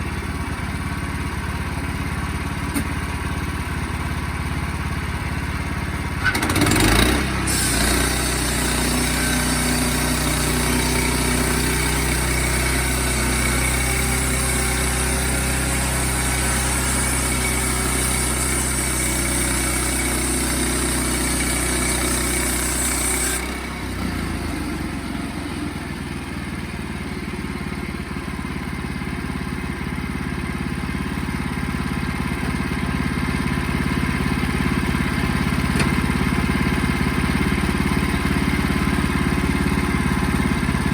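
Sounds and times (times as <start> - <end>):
saw blade cutting log: 0.0 - 25.8, 31.1 - 40.9
sawmill engine running: 0.0 - 40.9.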